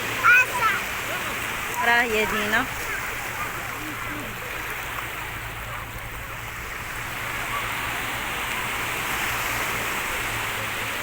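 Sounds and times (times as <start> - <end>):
sea surf washing up beach: 0.0 - 11.0.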